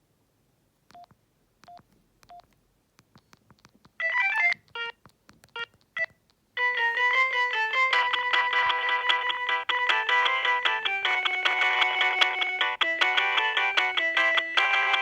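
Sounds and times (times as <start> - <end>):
keypad beeps: 0.9 - 2.5
phone ringtone melody: 6.6 - 15.0.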